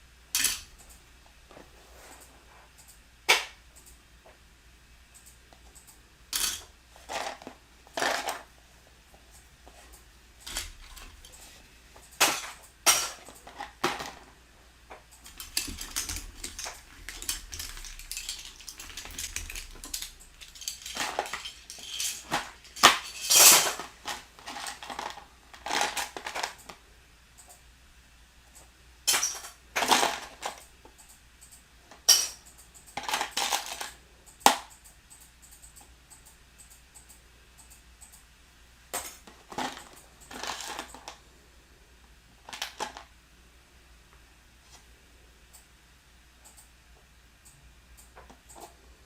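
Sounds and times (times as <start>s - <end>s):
plastic bricks clacking: 15.3s - 26.6s
rummaging through plastic pieces: 15.3s - 26.6s, 29.8s - 30.6s, 39.4s - 41.2s.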